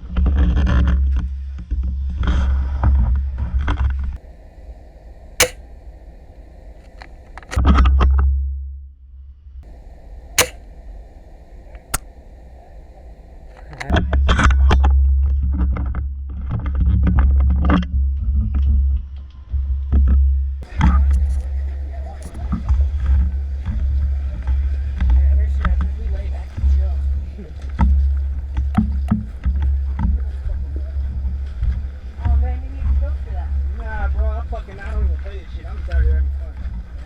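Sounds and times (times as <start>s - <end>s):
airsoft rifle shots: 4.2s - 7.6s, 9.7s - 12.6s.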